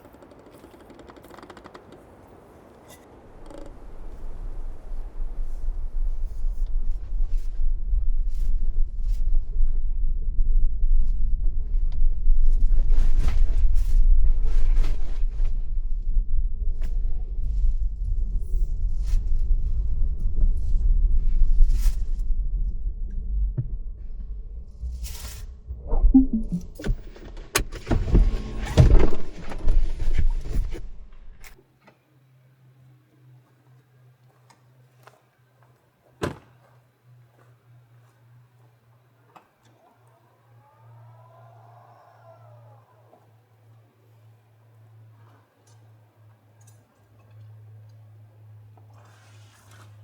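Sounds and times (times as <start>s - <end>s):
wavering gliding tone: 25.5s - 26.9s.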